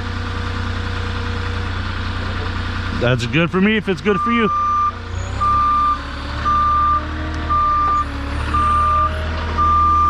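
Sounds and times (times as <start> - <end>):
engine droning: 0.0 - 10.0
forklift reverse alarm beeping: 4.1 - 10.0.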